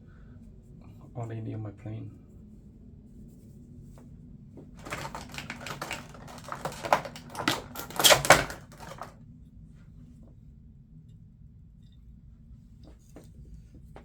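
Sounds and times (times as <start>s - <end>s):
handling clicks taps and rustles: 4.7s - 9.1s.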